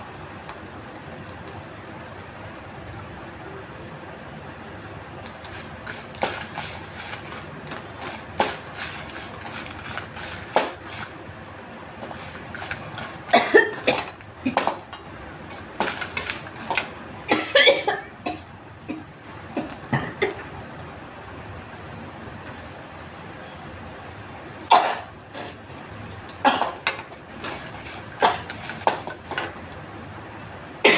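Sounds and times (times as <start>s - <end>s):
person coughing and sneezing: 13.3s - 14.7s, 17.3s - 19.0s, 24.7s - 25.1s, 26.4s - 26.8s.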